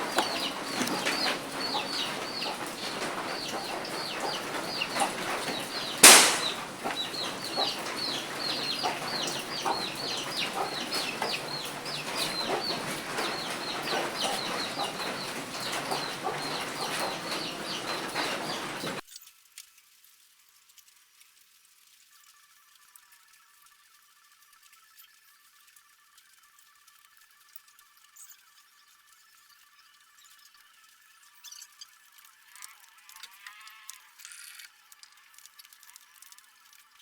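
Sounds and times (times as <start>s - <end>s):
birds chirping rapidly: 0.0s - 19.0s
loud knock: 0.1s - 19.0s.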